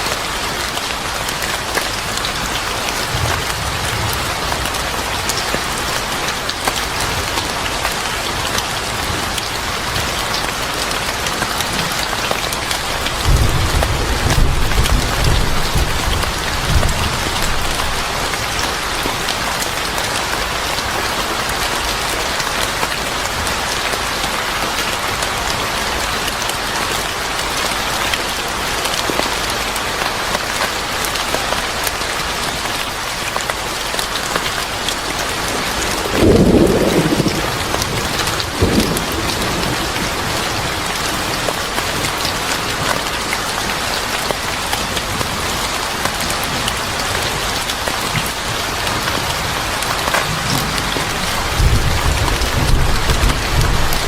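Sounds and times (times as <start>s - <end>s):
steady rain falling: 0.0s - 54.0s
thunder clap: 36.0s - 40.4s, 50.2s - 54.0s.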